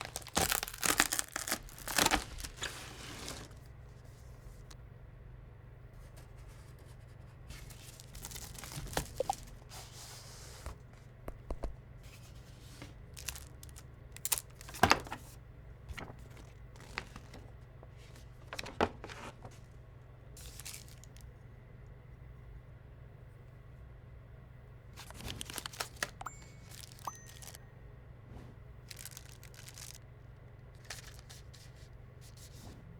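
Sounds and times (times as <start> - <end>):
packaging tearing and crinkling: 0.0 - 3.6, 7.6 - 9.6, 13.1 - 15.2, 20.4 - 21.2, 25.0 - 27.6, 28.9 - 30.0, 30.8 - 31.7.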